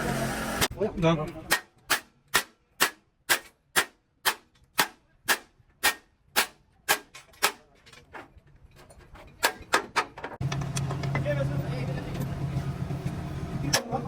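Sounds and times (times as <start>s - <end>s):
hammer strikes: 1.5s - 7.7s.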